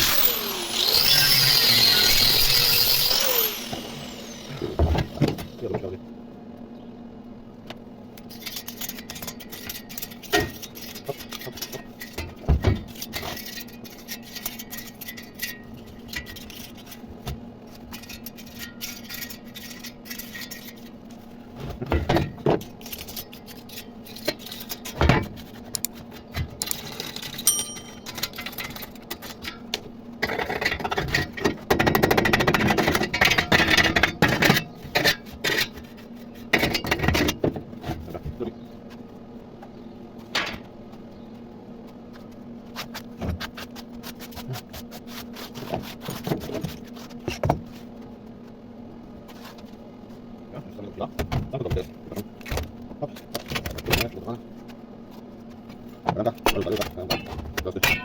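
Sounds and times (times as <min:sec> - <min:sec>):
sharp metal knocks: 0:56.6 - 0:58.0.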